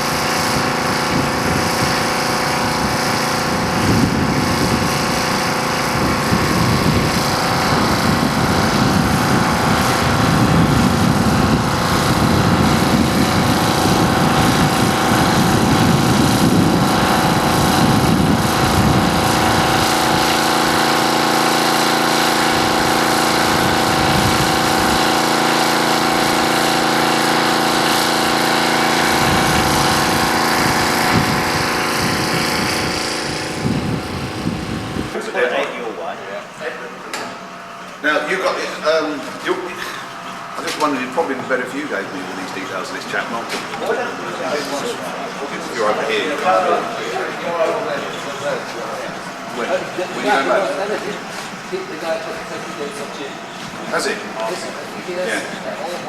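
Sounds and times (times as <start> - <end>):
small engine humming: 0.0 - 35.2.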